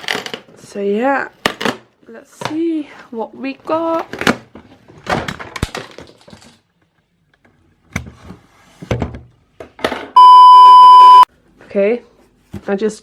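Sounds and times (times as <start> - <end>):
censor bleep: 10.2 - 11.3.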